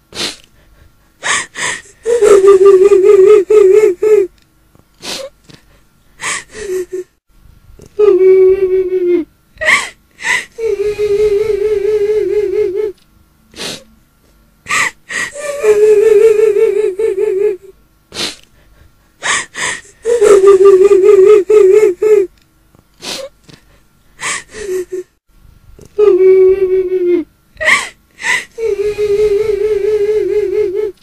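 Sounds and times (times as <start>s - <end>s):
gasping sobbing breaths: 0.2s - 2.8s, 5.0s - 7.1s, 9.6s - 11.1s, 18.1s - 20.5s, 23.0s - 25.1s, 27.6s - 30.8s
woman wailing: 2.0s - 4.3s, 8.0s - 9.9s, 14.7s - 17.7s, 20.0s - 22.3s.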